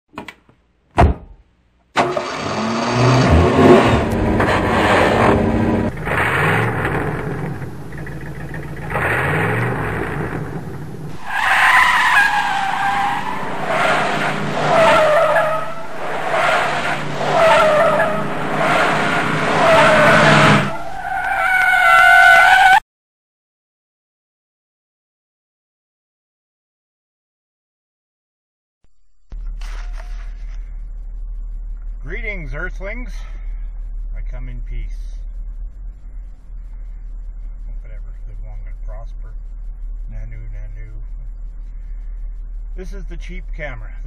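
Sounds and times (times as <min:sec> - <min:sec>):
car engine revving: 0:01.9 - 0:22.8, 0:29.4 - 0:44.0
tyre squeals: 0:11.1 - 0:22.8.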